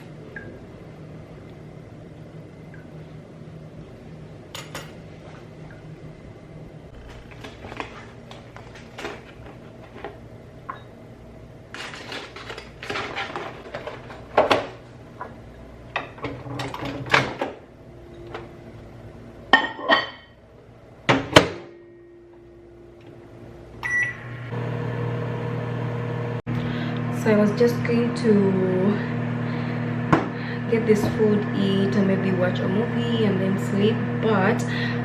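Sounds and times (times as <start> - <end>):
microwave oven humming: 0.0 - 35.0
dishes and utensils clinking: 4.5 - 5.0.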